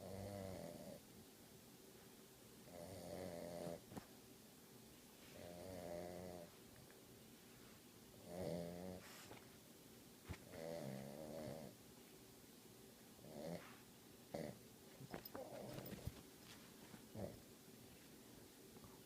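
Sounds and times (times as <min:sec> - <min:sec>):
pet snoring softly: 0:00.0 - 0:01.0, 0:02.7 - 0:03.8, 0:05.3 - 0:06.5, 0:08.2 - 0:09.3, 0:10.5 - 0:11.8, 0:13.2 - 0:14.6.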